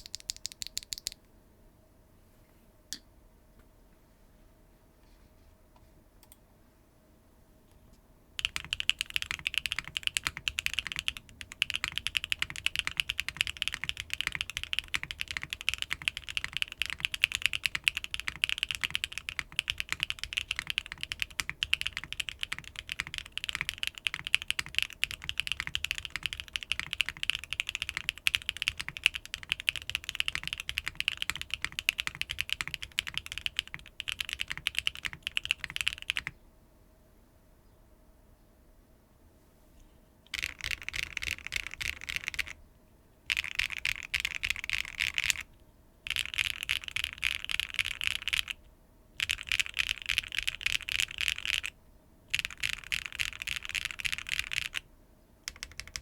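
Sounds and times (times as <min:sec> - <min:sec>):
fast typing on mechanical keyboard: 0:00.0 - 0:01.2, 0:08.4 - 0:36.4, 0:40.3 - 0:42.6, 0:43.3 - 0:48.6, 0:49.2 - 0:54.8, 0:55.5 - 0:56.0.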